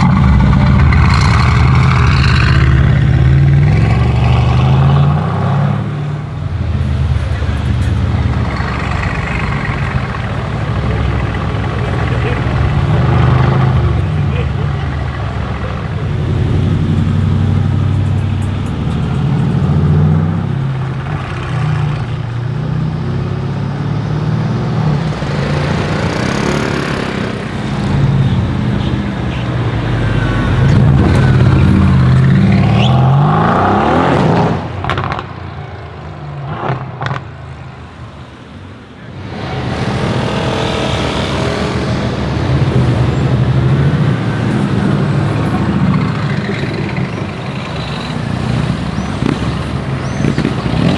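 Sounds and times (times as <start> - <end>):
loud car engine revving: 0.0 - 37.4, 39.0 - 50.9
exhaust pops and crackles: 49.0 - 50.9.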